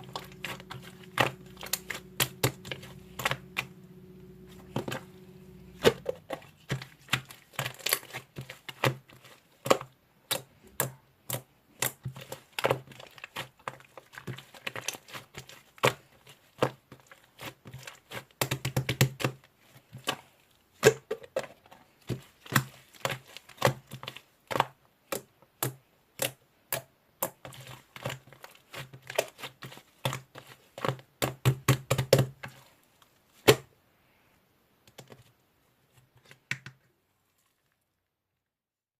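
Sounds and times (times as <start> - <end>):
slime squished by hand: 5.7 - 21.1.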